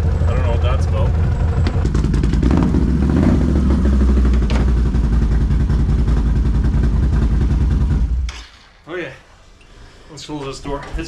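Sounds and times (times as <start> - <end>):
engine running steadily: 0.0 - 8.4.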